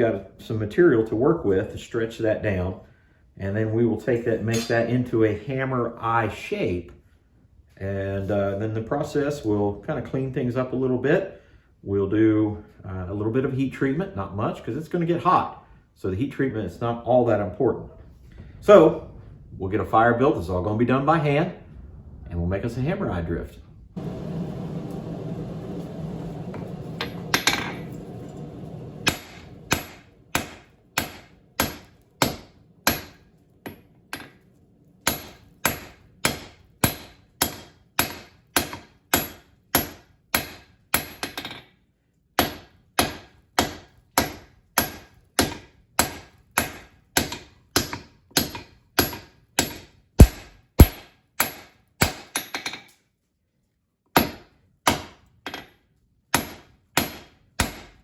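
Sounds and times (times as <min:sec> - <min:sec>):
hammer blows on steel anvil: 0:04.5 - 0:05.1, 0:24.0 - 0:33.2, 0:50.2 - 0:51.0
steady hum: 0:23.9 - 0:33.2.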